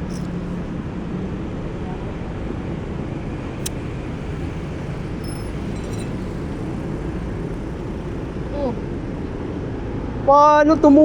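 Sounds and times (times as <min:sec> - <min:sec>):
sharp click: 0:00.0 - 0:00.5, 0:03.6 - 0:06.5
low outdoor rumble: 0:00.0 - 0:11.0.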